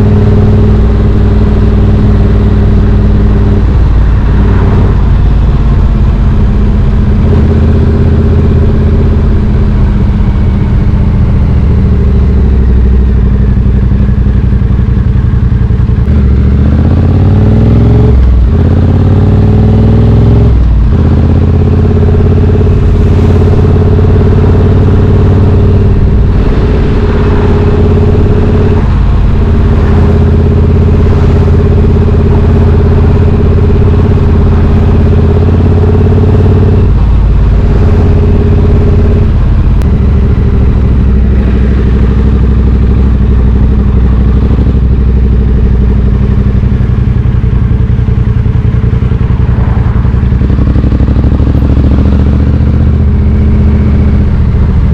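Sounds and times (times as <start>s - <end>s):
motorcycle engine revving: 0.0s - 54.9s.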